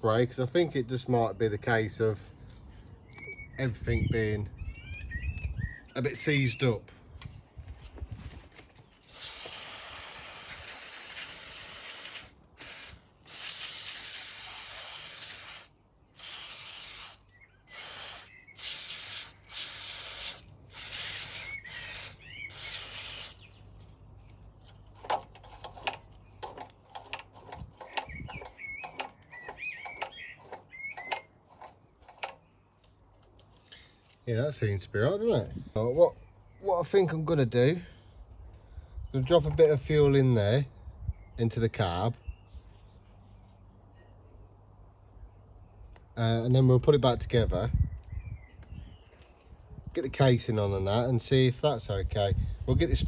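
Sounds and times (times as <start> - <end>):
aerosol spray hissing: 9.0 - 23.5
metal parts clicking and squeaking: 24.9 - 32.4.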